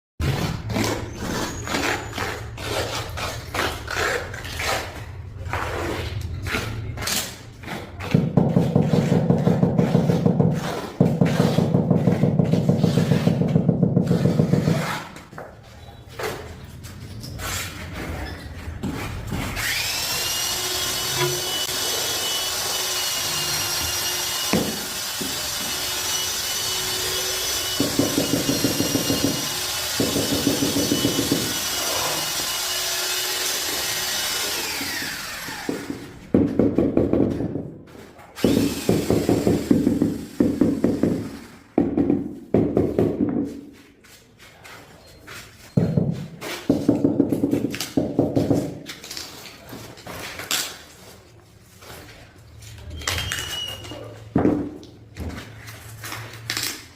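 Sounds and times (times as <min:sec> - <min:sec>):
electric power cutter whining: 0:32.2 - 0:35.7.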